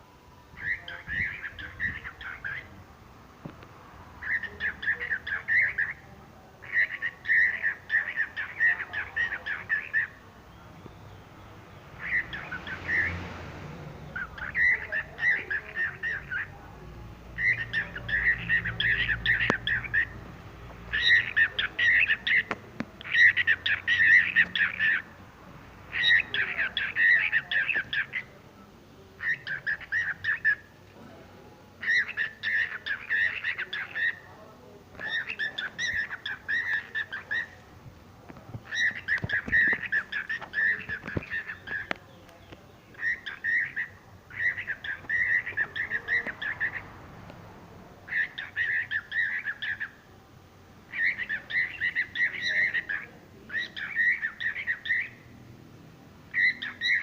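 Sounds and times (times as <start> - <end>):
bird singing trills: 14.0 - 16.6, 20.9 - 25.1, 35.0 - 37.6, 38.6 - 46.8, 48.1 - 50.0, 50.9 - 55.3, 56.3 - 57.0.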